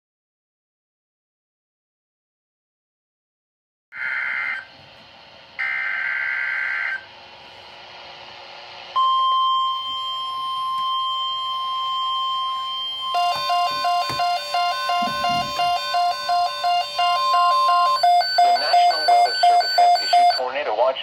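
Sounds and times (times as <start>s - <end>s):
steady alarm tone: 8.9s - 20.4s.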